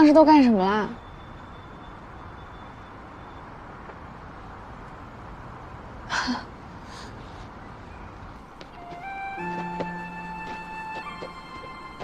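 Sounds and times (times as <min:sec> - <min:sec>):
background hiss: 0:02.7 - 0:12.0.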